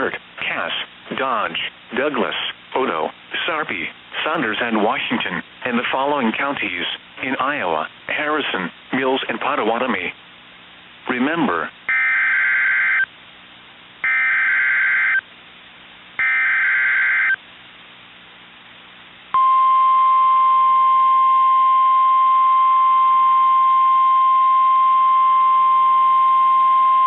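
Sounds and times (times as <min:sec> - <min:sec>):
steady warning alarm tone: 0:11.9 - 0:13.1, 0:14.0 - 0:15.2, 0:16.2 - 0:17.4.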